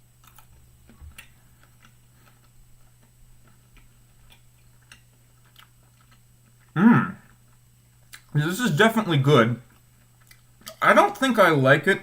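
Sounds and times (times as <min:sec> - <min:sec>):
person chewing meat: 0:00.0 - 0:08.4, 0:09.6 - 0:10.8
low steady hum: 0:00.0 - 0:12.0
short loud vocal sound: 0:06.8 - 0:07.3.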